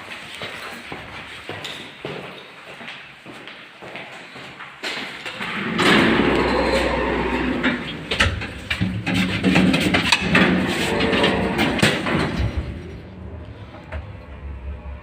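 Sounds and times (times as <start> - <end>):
elevator mechanism clattering: 5.3 - 15.0
elevator low hum: 5.4 - 9.3, 10.0 - 15.0.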